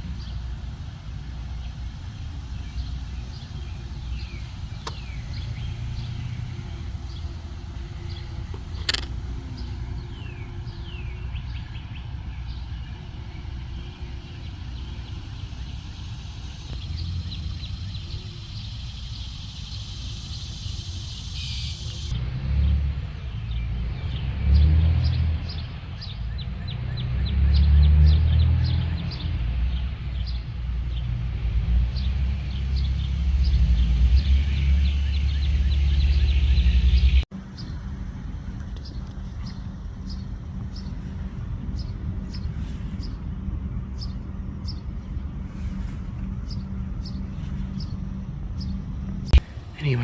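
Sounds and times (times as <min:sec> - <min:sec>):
birds chirping: 0:00.0 - 0:50.0
sharp clicks: 0:08.5 - 0:09.2.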